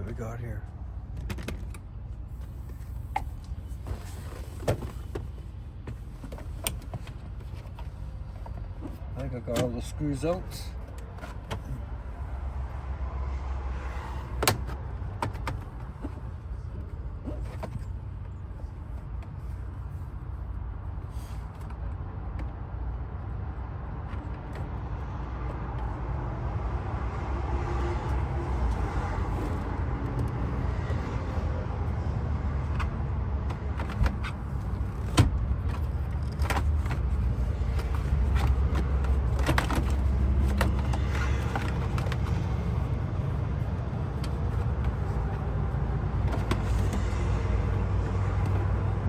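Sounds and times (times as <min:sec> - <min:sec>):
low outdoor rumble: 0:00.0 - 0:49.0.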